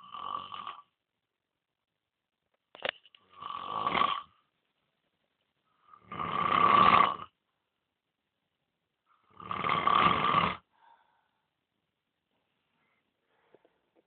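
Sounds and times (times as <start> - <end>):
man snoring: 0.0 - 0.9, 3.3 - 4.4, 5.9 - 7.4, 9.2 - 10.7.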